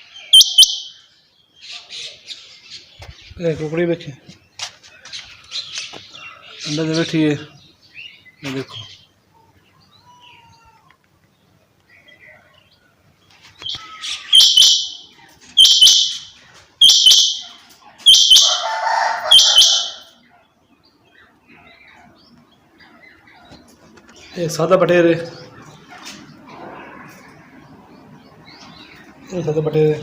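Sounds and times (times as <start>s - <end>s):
quail harsh rasping calls: 13.7s - 20.2s.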